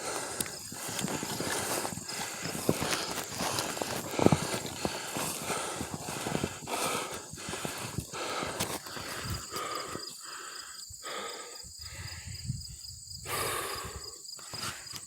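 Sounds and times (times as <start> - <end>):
footsteps rustling through brush: 0.0 - 10.0
high insect drone: 0.0 - 15.0
man breathing heavily: 0.0 - 15.0.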